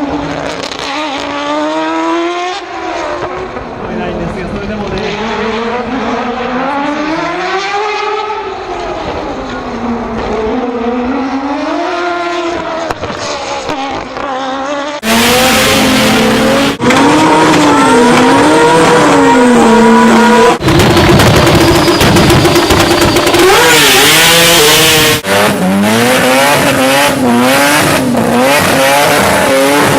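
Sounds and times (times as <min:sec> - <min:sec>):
rotary car engine revving: 0:00.0 - 0:29.9
rotary engine at high revs: 0:00.0 - 0:29.9.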